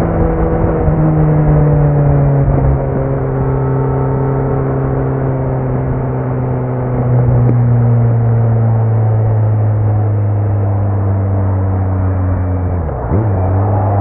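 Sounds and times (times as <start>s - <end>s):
motorcycle exhaust drone: 0.0s - 14.0s.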